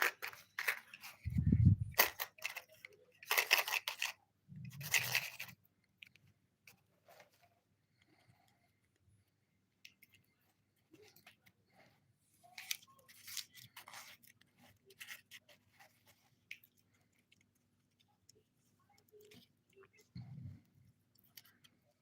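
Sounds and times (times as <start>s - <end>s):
plastic parts clicking and scraping: 0.0s - 7.4s, 12.5s - 22.0s.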